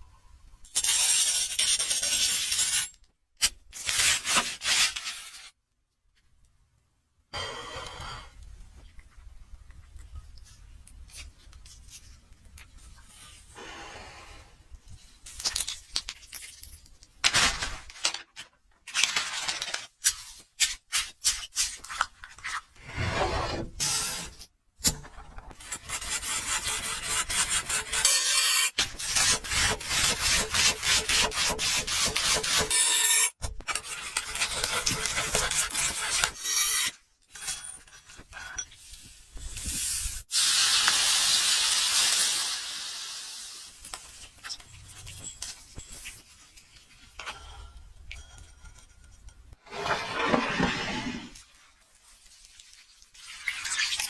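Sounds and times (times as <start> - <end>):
rubbing and scraping strokes: 48.5 - 53.4.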